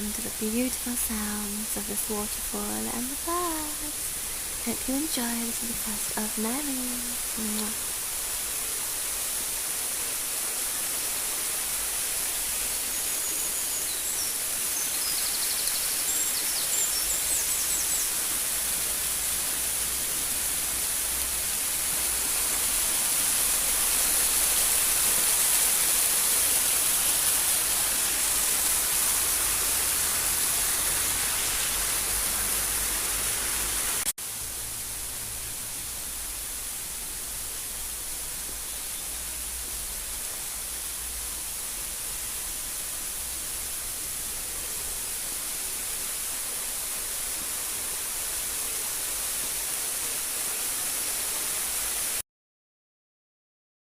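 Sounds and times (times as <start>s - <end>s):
waterfall rushing: 0.0s - 52.2s
faint bird chirps: 12.8s - 18.2s.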